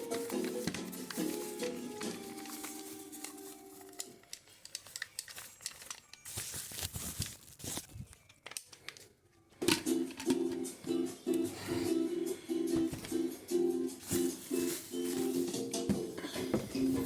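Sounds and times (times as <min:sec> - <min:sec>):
music: 0:00.0 - 0:06.5, 0:09.6 - 0:17.0
plastic packaging crinkling: 0:00.0 - 0:09.1, 0:14.0 - 0:15.7.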